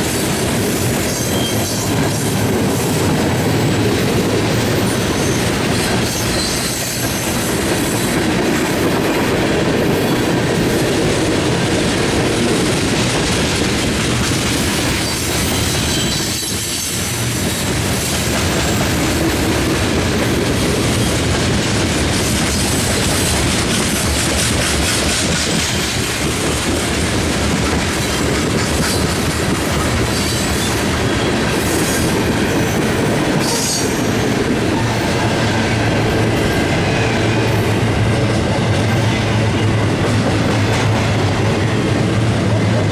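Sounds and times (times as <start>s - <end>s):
freight train wheels clattering: 0.0s - 42.9s
high wheel squeal: 1.0s - 2.0s, 4.6s - 7.4s.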